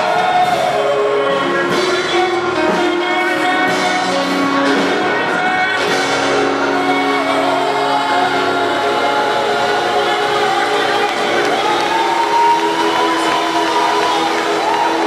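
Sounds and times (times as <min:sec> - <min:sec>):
choir singing gospel: 0:00.0 - 0:15.0.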